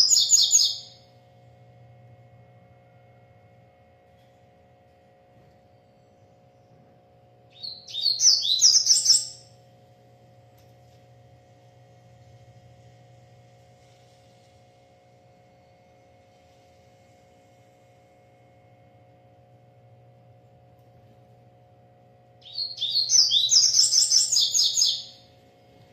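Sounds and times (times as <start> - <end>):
bird chirping: 0.0 - 1.0, 7.5 - 9.5, 22.4 - 25.4
steady low hum: 0.0 - 25.9.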